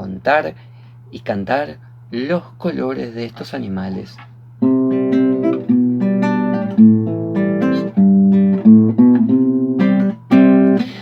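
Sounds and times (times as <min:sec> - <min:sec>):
acoustic guitar strumming: 0:04.6 - 0:11.0.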